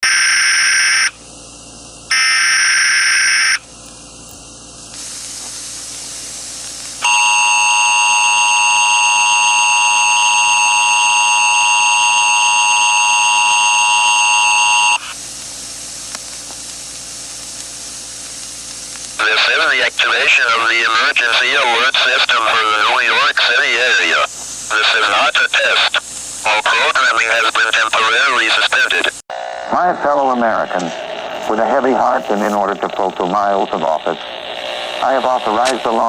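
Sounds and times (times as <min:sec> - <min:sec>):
static hiss: 0:00.3 - 0:29.3, 0:30.0 - 0:36.0
digital header screech: 0:02.1 - 0:03.7, 0:07.0 - 0:15.2.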